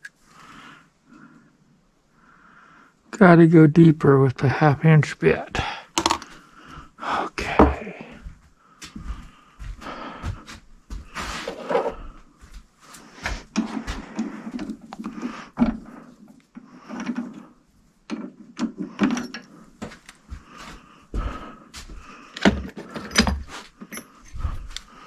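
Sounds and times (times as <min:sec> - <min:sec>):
metal tools knocking and scraping: 0:22.5 - 0:24.6.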